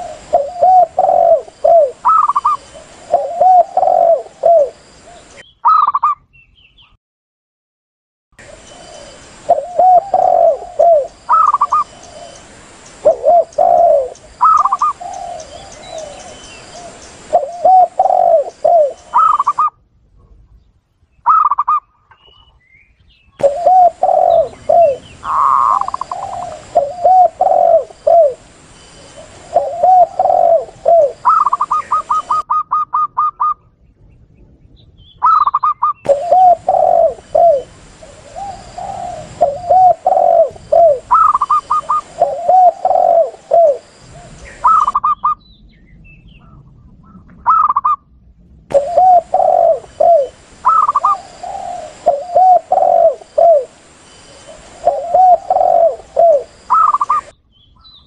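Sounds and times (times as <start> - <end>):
doves low cooing: 0.0 - 6.1, 8.4 - 19.8, 23.4 - 33.8, 35.2 - 45.4, 46.4 - 48.0, 48.7 - 57.4
rapid higher dove coos: 0.0 - 6.2, 8.4 - 19.7, 23.4 - 33.7, 35.2 - 45.4, 46.5 - 48.0, 48.7 - 57.4.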